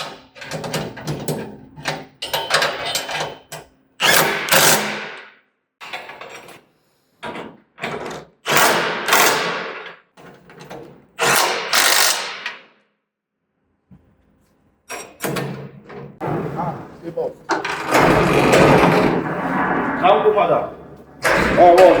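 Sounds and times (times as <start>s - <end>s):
power tool bursts: 4.0s - 5.3s, 8.5s - 9.8s, 11.2s - 12.6s.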